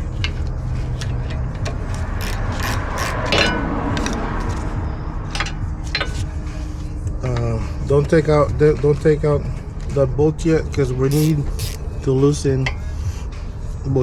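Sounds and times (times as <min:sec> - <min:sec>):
socket ratchet clicking: 0:00.0 - 0:04.7, 0:11.1 - 0:11.8.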